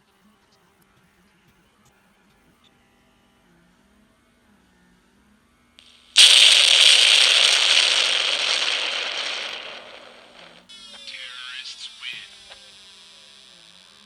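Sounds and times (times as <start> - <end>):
explosion sound effect crackling: 6.1 - 10.6.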